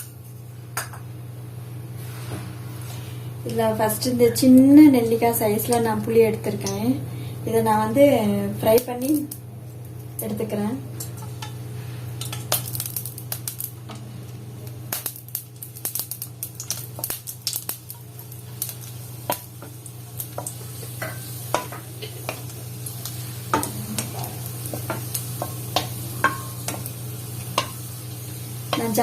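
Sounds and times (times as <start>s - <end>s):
steady low hum: 0.0s - 29.0s
food sizzling in hot oil: 8.6s - 14.0s, 14.7s - 29.0s.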